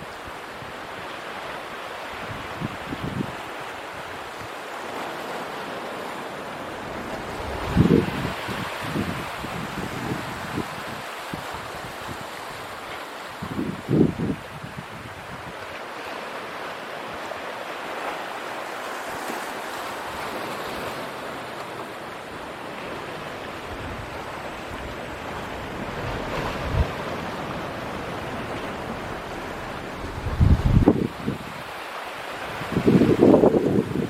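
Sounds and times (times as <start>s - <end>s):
waves washing: 0.0s - 34.0s
wind on microphone: 2.2s - 4.6s, 6.8s - 15.8s, 23.1s - 34.0s.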